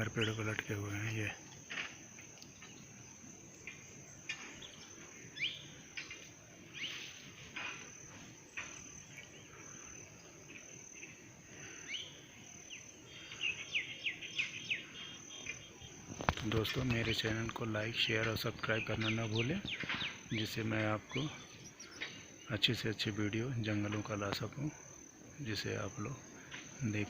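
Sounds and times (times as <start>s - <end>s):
birds chirping: 0.0s - 27.0s
high insect drone: 0.0s - 27.0s.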